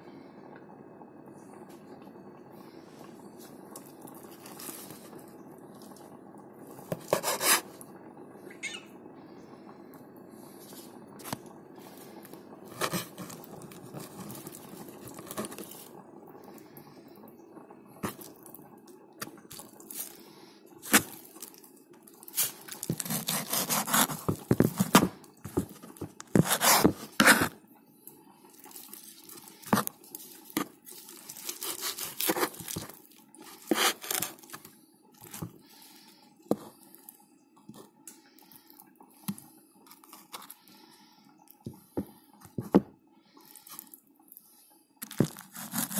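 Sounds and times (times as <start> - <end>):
faint steady hum: 0.0 - 45.9
scraping and rubbing strokes: 7.0 - 7.7, 12.7 - 15.8, 22.3 - 27.6, 28.9 - 34.7, 45.0 - 45.9.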